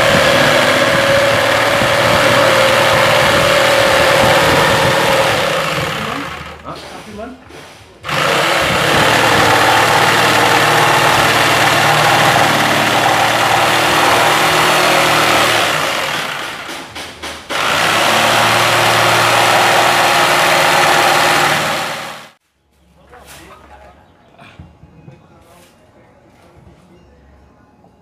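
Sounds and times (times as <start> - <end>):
electric power tool running: 0.0 - 6.6, 8.0 - 16.9, 17.5 - 22.4.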